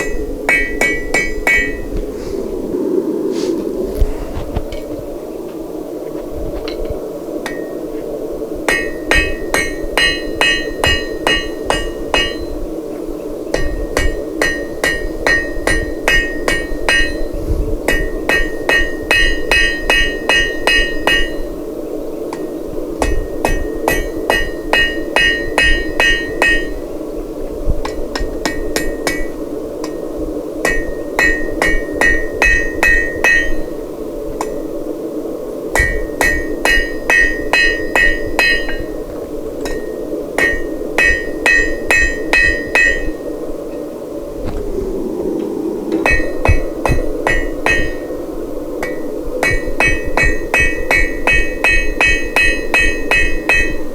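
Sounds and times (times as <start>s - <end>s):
hammer ringing on anvil: 0.0s - 1.9s, 8.7s - 12.6s, 13.6s - 17.3s, 17.9s - 21.5s, 22.4s - 26.8s, 30.7s - 33.6s, 35.8s - 38.9s, 39.6s - 43.2s, 46.0s - 48.1s, 48.8s - 53.8s.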